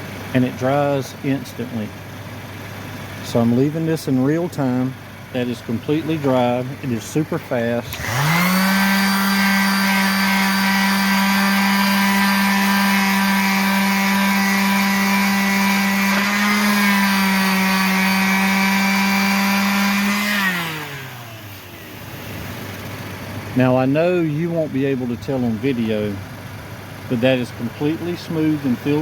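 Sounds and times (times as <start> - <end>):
electric sander motor: 7.2 - 23.0, 27.2 - 29.0.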